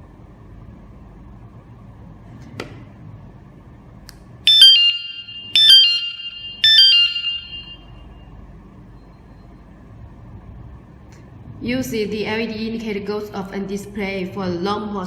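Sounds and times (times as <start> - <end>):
vehicle alarm falling chime: 4.5 - 8.2.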